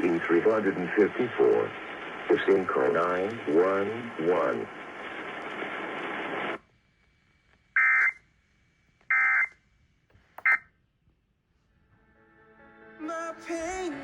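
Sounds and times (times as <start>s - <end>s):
radio hiss: 0.0s - 6.7s, 7.7s - 8.3s.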